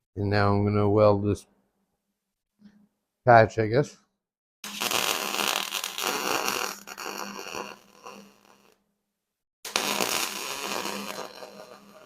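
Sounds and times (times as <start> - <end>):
welding arc humming: 4.6 - 8.8, 9.7 - 12.0.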